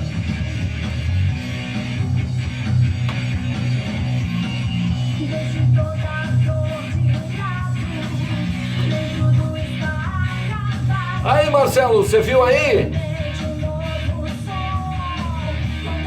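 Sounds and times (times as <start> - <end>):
distorted electric guitars: 0.0 - 16.0
steady bass line: 0.0 - 16.0.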